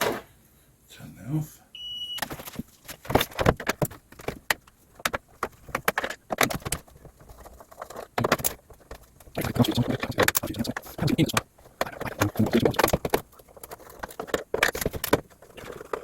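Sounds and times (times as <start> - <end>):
clicks and knocks on plastic case: 2.3 - 16.0.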